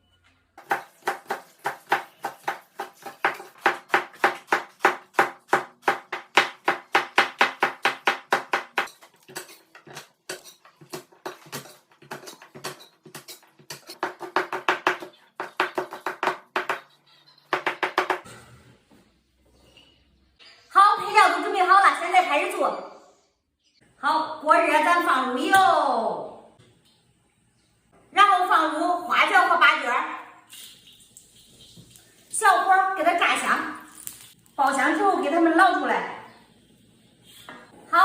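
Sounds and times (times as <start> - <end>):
knife chopping on cutting board: 0.6 - 16.8.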